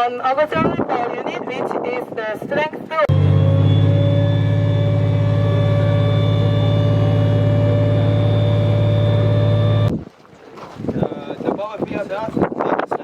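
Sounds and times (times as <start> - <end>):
heavy vehicle engine droning: 3.1 - 9.9.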